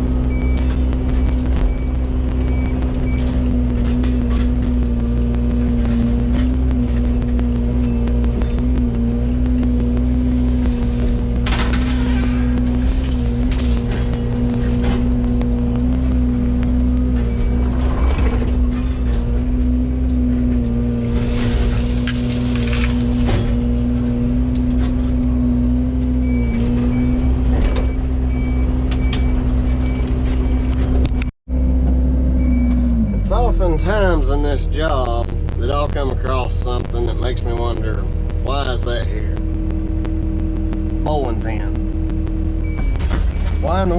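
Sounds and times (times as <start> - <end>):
travel alarm beeping: 0.0 - 19.0, 26.2 - 31.3, 38.1 - 43.9
rapid regular ticking: 0.0 - 19.8, 34.7 - 43.9
excavator engine humming: 0.0 - 43.9.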